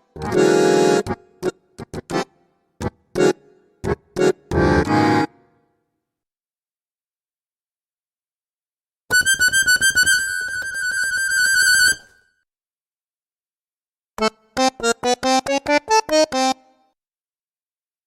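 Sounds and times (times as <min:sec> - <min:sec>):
accordion notes: 0:00.0 - 0:05.7, 0:09.1 - 0:12.2, 0:14.2 - 0:17.0.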